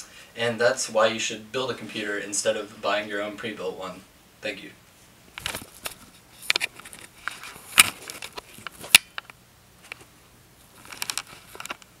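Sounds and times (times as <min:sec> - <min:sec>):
rustling and handling noise: 0:04.9 - 0:12.0.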